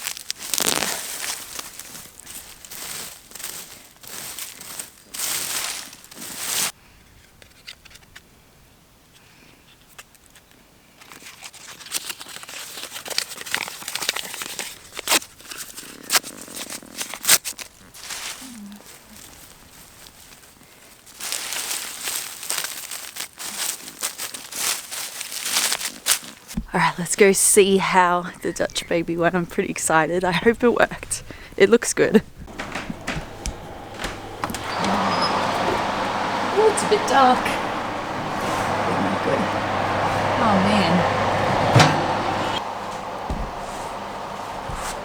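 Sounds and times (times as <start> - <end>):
sharp crackles and clicks: 0.0 - 3.6
hands rustling in garden soil: 0.0 - 6.7, 17.9 - 27.0, 32.4 - 45.0.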